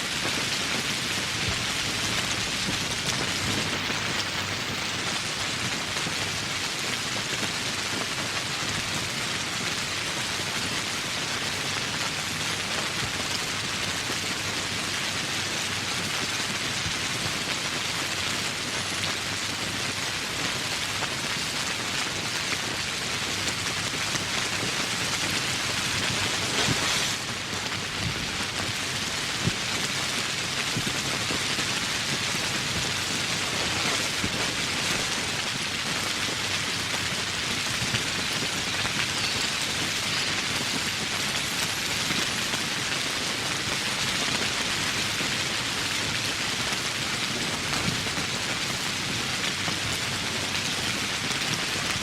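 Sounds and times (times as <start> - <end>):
steady rain hiss: 0.0 - 52.0
sharp raindrop hits: 22.5 - 43.1.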